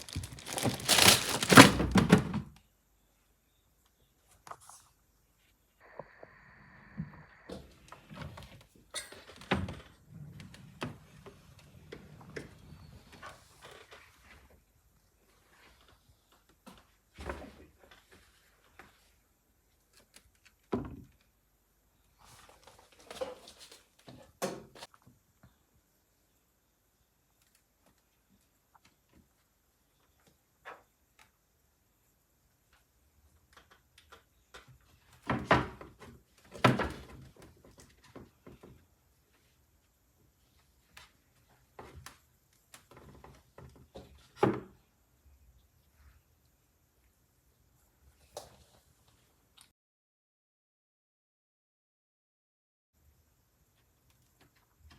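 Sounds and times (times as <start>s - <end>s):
rustling: 0.0s - 2.2s.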